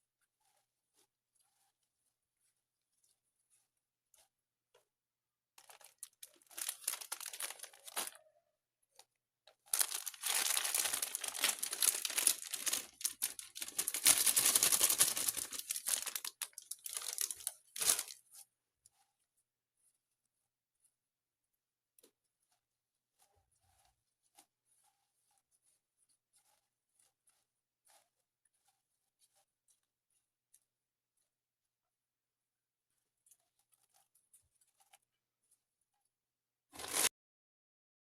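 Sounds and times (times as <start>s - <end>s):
crinkling handling noise: 5.6s - 8.3s, 9.0s - 18.5s, 36.7s - 37.1s.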